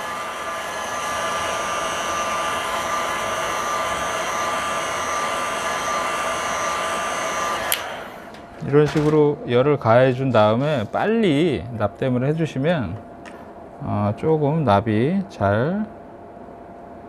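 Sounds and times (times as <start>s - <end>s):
heat gun blowing with faint whine: 0.0s - 8.6s
heat gun switch click: 7.6s - 8.0s.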